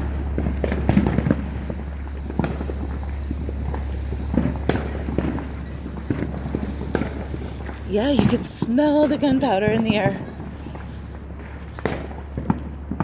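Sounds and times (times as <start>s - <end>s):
steady low hum: 0.0s - 13.0s
fireworks and firecrackers popping: 4.7s - 13.0s.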